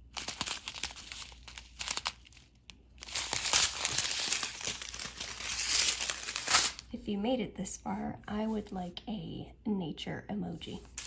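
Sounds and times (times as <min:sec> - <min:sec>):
plastic packets crinkling: 0:00.0 - 0:06.9.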